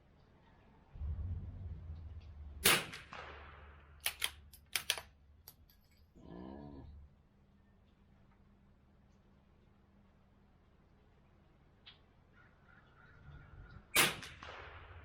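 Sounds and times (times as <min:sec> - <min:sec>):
low rumble: 0:00.9 - 0:04.6
rifle shot with echo: 0:02.6 - 0:05.0, 0:14.0 - 0:15.0
rifle bolt metallic clicks: 0:04.0 - 0:06.0.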